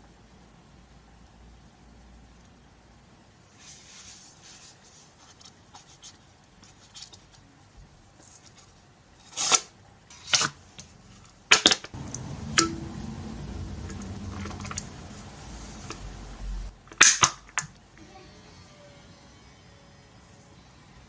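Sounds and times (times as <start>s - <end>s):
scratching and rubbing: 3.5s - 7.5s
low steady hum: 10.8s - 21.0s.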